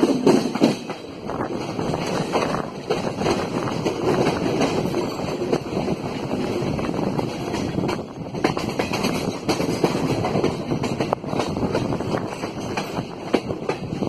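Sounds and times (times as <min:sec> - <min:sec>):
train wheels rumbling on rails: 0:00.0 - 0:14.0
wheels clicking over rail joints: 0:00.0 - 0:14.0.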